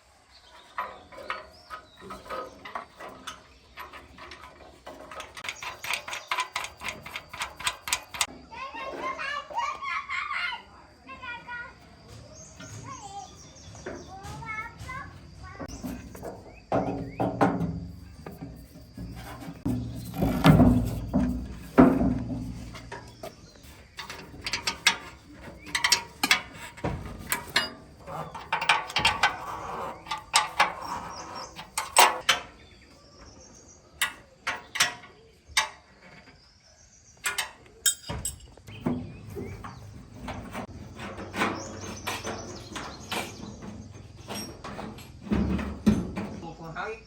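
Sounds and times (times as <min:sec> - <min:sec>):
metallic clicks and clinks: 0:37.2 - 0:38.7.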